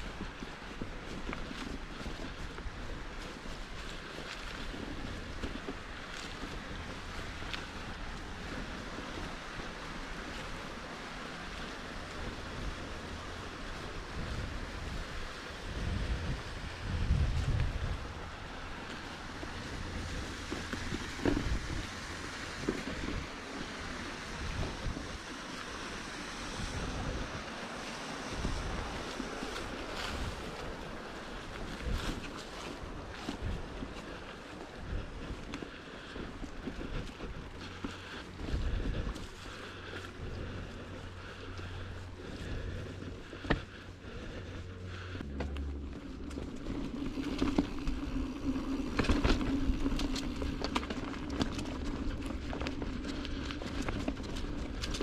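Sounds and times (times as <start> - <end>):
bike tyres knocking on dirt trail: 0.0 - 27.4, 28.3 - 55.0
wind buffeting microphone: 0.0 - 55.0
bike knocks and rattles: 45.3 - 55.0.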